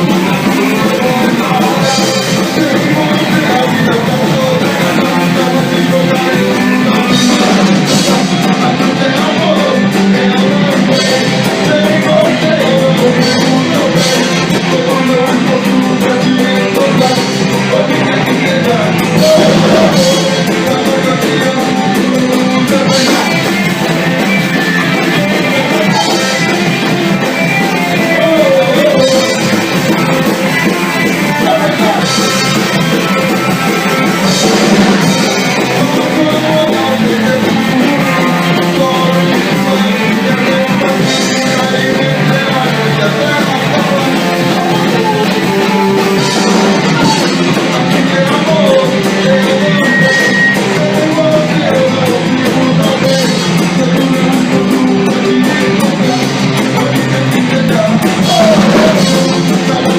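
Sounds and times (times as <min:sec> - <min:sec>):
drum kit: 0:00.0 - 0:59.9
electric guitar: 0:00.0 - 0:59.9
loud rock music: 0:00.0 - 0:59.9
person singing: 0:00.0 - 0:59.9.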